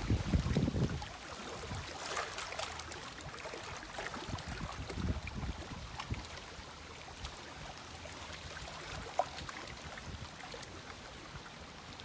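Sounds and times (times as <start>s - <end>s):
lake water lapping: 0.0s - 12.0s.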